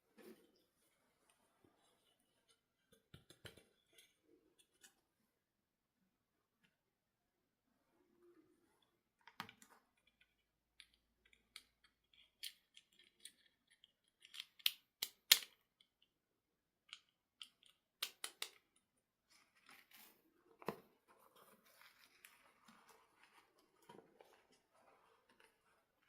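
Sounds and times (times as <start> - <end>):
plastic toy parts clicking: 9.5 - 16.0, 16.8 - 18.8.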